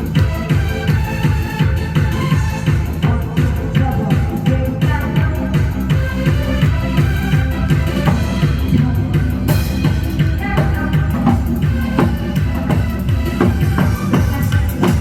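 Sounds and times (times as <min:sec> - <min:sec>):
amplified backing music: 0:00.0 - 0:15.0.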